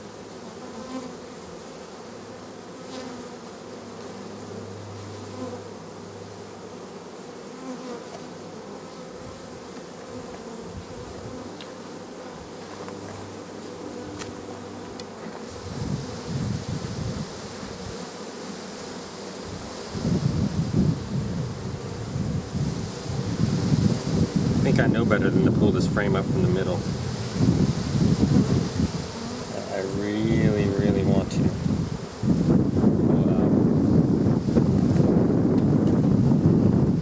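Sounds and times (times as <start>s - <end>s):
bees buzzing: 0.0s - 37.0s
wind buffeting microphone: 10.6s - 11.4s, 15.5s - 18.0s, 19.5s - 37.0s.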